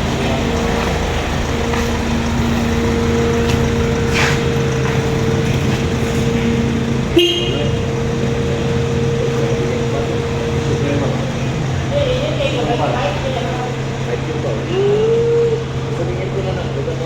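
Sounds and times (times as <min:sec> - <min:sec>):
car engine idling: 0:00.0 - 0:17.0
car horn toot: 0:06.2 - 0:10.8.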